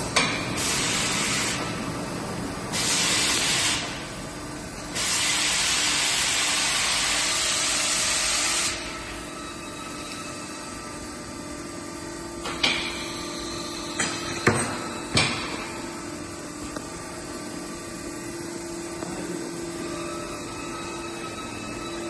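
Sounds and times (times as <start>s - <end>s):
steady machine hum: 0.0s - 22.0s
laser cutter gas hissing: 0.5s - 1.7s, 2.7s - 4.0s, 4.9s - 9.0s.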